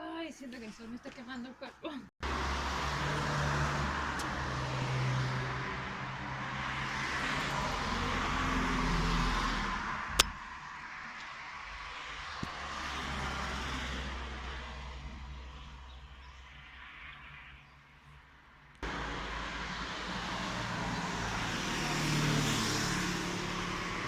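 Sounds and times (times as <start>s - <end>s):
motor vehicles passing: 1.0s - 24.0s
sharp click: 10.2s - 10.4s.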